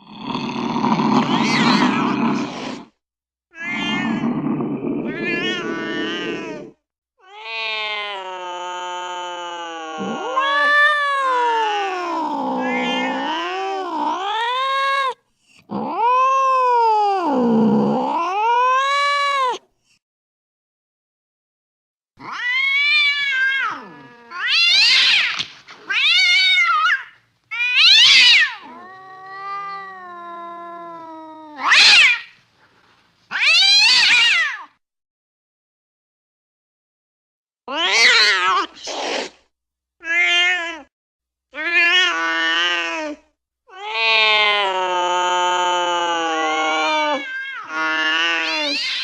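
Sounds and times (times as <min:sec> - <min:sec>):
cat yowling: 0:01.2 - 0:02.3, 0:03.5 - 0:04.4, 0:05.0 - 0:19.6, 0:22.2 - 0:32.4, 0:33.3 - 0:34.7, 0:37.7 - 0:38.8, 0:41.6 - 0:49.0.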